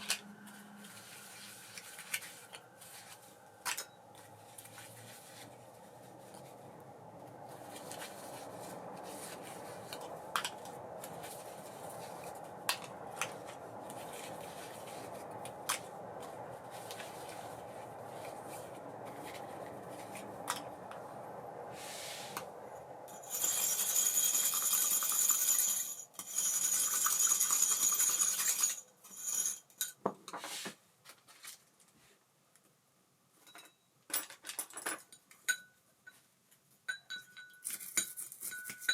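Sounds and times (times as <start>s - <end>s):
reel clicking and rattling: 23.2s - 29.6s.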